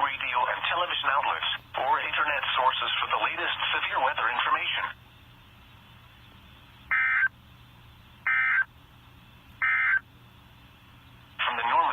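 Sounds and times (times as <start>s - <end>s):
faint radio hiss: 0.0s - 11.9s
warbling two-tone data bursts: 6.9s - 7.3s, 8.2s - 8.7s, 9.6s - 10.0s.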